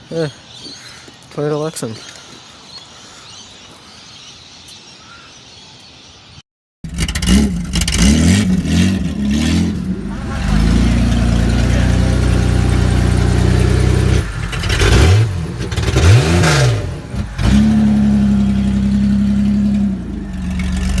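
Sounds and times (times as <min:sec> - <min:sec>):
car engine running and revving: 0:06.9 - 0:21.0.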